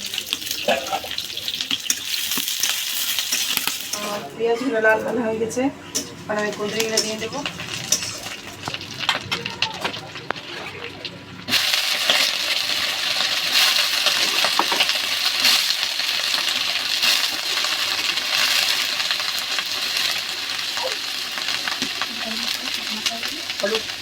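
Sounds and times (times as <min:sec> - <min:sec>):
vegetables sizzling in hot oil: 0:00.0 - 0:04.3, 0:06.3 - 0:24.0.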